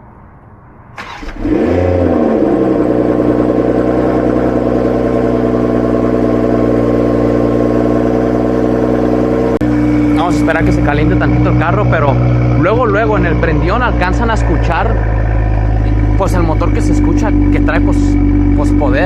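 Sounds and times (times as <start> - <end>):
car engine starting and idling: 0.1 - 19.0.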